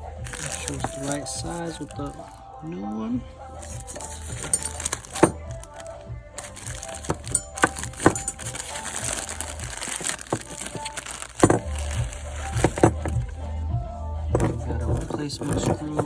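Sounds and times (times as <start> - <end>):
background music: 0.0 - 16.0
small metal parts clicking and rattling: 3.6 - 13.3, 14.4 - 16.0.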